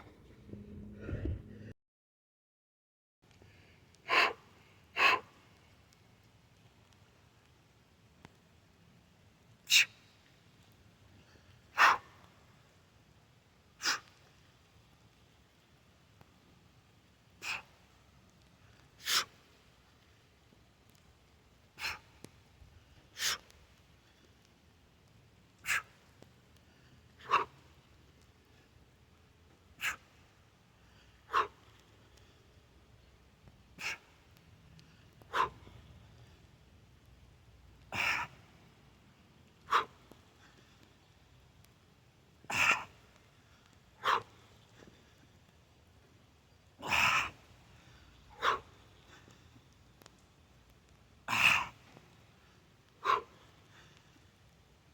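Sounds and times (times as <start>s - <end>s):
person forceful breaths: 0.7s - 1.7s
sharp exhalations: 0.9s - 1.7s.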